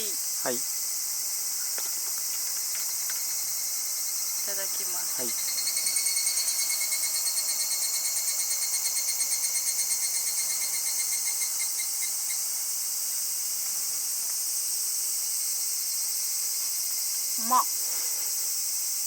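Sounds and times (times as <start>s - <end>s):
crickets chirping: 0.0s - 19.0s
high-pitched insect drone: 0.0s - 19.0s.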